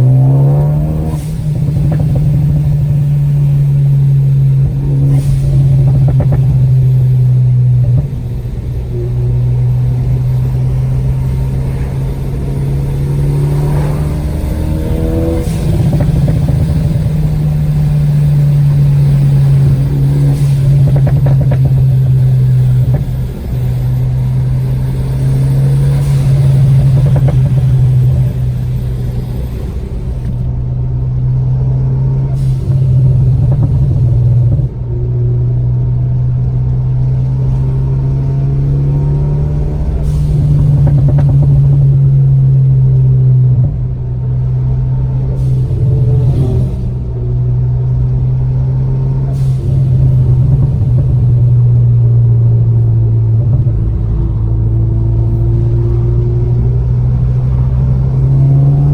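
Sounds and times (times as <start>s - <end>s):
exhaust pops and crackles: 0.0s - 12.4s, 13.0s - 30.6s, 32.7s - 35.6s, 39.3s - 47.7s
car engine droning while driving: 0.0s - 58.9s.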